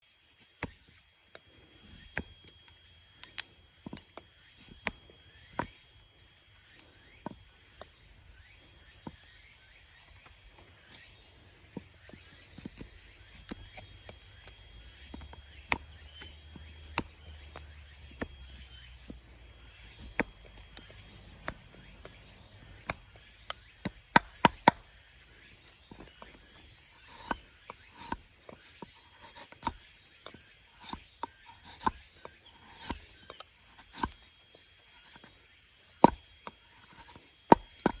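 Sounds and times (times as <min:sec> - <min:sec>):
blade carving wood: 0:00.3 - 0:38.0.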